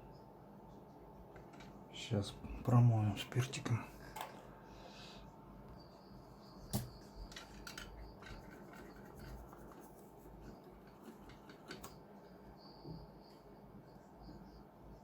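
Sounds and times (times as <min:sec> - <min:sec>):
brush scratching on circuit board: 0:08.3 - 0:11.7.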